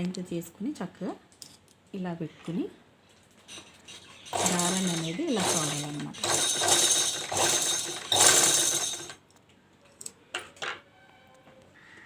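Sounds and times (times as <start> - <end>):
sewing machine whirring: 3.5 - 9.2.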